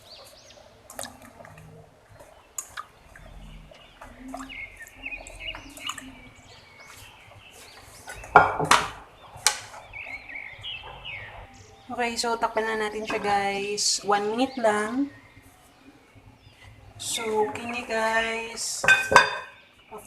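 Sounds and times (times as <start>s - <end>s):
birds chirping: 0.0s - 20.0s
utensil clinking on pot: 18.8s - 19.6s.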